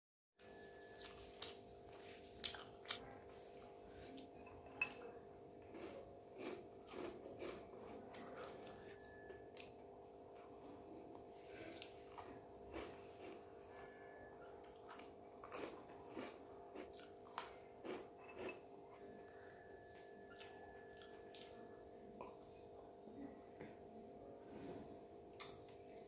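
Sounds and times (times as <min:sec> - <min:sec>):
person chewing and eating: 0:00.4 - 0:22.8.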